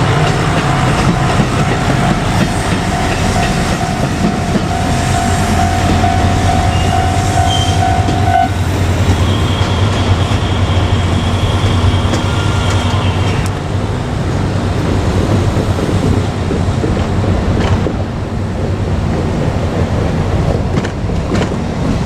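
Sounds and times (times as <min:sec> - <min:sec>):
steady high tone: 0:00.0 - 0:13.3
diesel railcar rumbling past: 0:00.0 - 0:22.0
wheels clicking over rail joints: 0:00.0 - 0:22.0.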